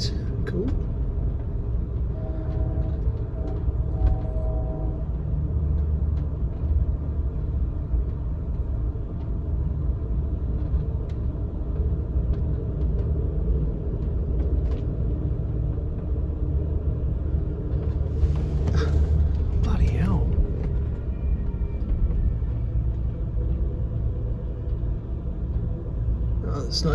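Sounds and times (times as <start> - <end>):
train rumbling along track: 0.0 - 26.9
train horn chord: 2.1 - 5.2.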